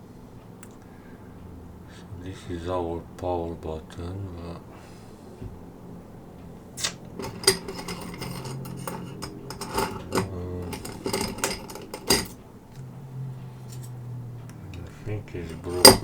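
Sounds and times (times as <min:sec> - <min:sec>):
low steady hum: 0:00.0 - 0:16.0
metal tools clinking: 0:07.2 - 0:12.4, 0:15.5 - 0:16.0.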